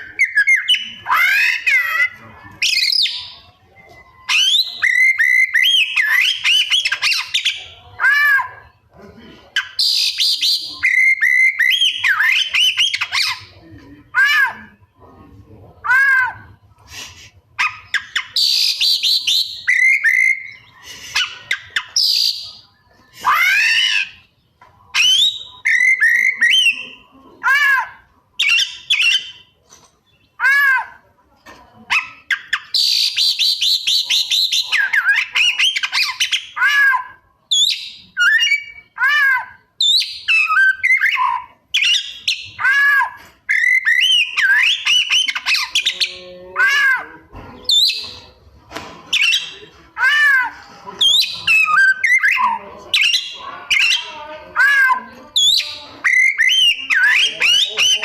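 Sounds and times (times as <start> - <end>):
bird singing whistles and trills: 2.6 - 7.7, 17.9 - 24.1, 39.8 - 42.6, 43.5 - 46.0.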